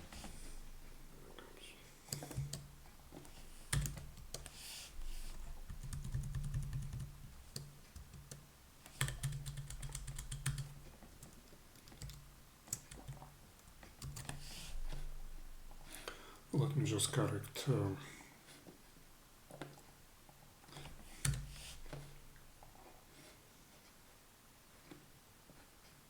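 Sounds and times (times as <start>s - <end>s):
typing on computer keyboard: 2.1s - 2.7s, 3.7s - 4.6s, 5.6s - 14.4s, 21.2s - 21.5s.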